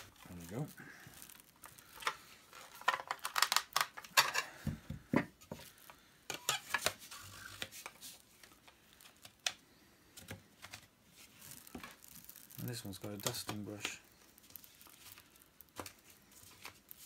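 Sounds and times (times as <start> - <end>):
plastic attachments clicking and knocking: 1.2 - 5.7, 11.6 - 16.0.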